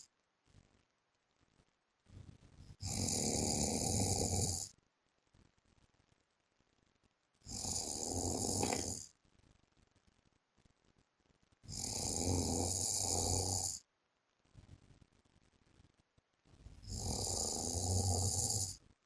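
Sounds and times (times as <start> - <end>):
man snoring: 2.8 - 4.7, 7.5 - 9.1, 11.7 - 13.8, 16.9 - 18.8
quiet breathing: 7.4 - 9.1.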